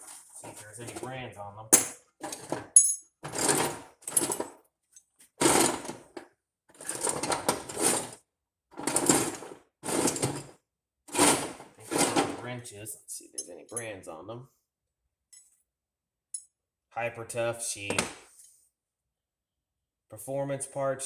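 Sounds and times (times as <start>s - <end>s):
metal tools clinking in toolbox: 1.8s - 4.6s, 5.4s - 6.1s, 6.8s - 8.2s, 8.8s - 10.5s, 11.1s - 12.4s, 13.4s - 14.0s.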